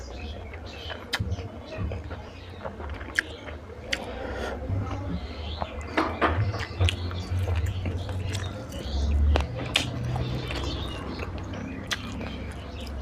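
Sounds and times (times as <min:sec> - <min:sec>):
chewing and wet mouth smacking: 0:02.0 - 0:04.2, 0:05.5 - 0:13.0.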